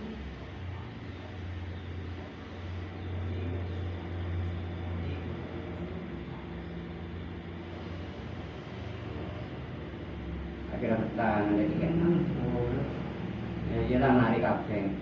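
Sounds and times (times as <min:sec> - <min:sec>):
low engine-like hum: 0:00.0 - 0:15.0.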